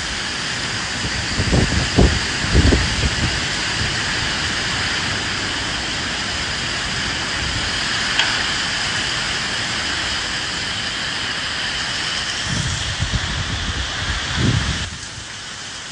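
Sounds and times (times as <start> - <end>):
steady rain falling: 0.0 - 15.9
sharp tick: 8.2 - 8.4.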